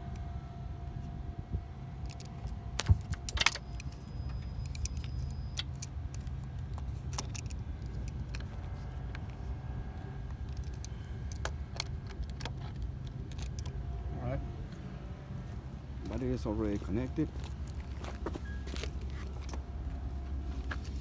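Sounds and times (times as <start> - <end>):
steady low rumble: 0.0 - 21.0
metallic clinks and clicks: 3.0 - 8.5, 10.3 - 13.8.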